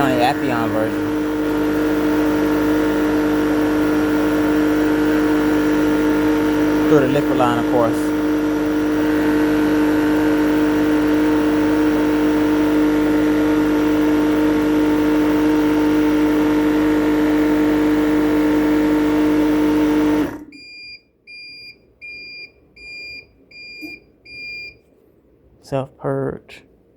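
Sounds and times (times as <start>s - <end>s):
short electronic beeps: 0.0s - 16.4s, 20.5s - 24.8s
compressor humming: 0.0s - 21.4s.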